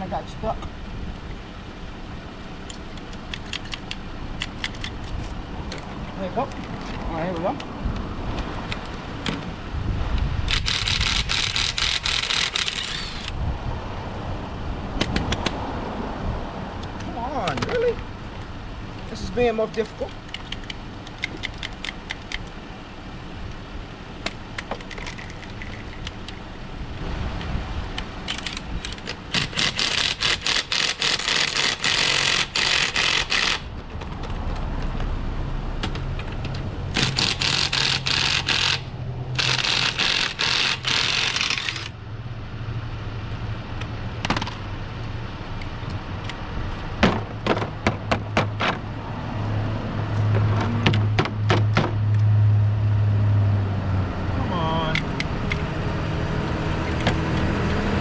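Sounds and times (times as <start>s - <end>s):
impact wrench rapid clicking: 10.5s - 13.4s, 28.3s - 33.7s, 36.9s - 41.9s.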